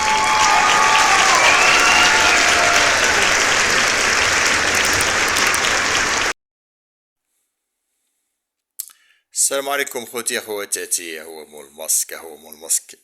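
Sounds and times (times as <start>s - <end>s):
crowd cheering: 0.0s - 6.3s
crowd applauding: 0.0s - 6.4s.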